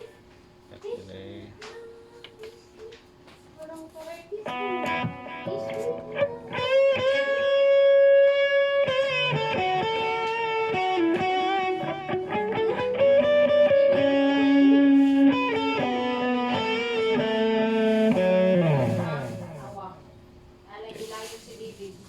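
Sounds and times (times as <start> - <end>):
distorted electric guitar lead: 4.5 - 20.0.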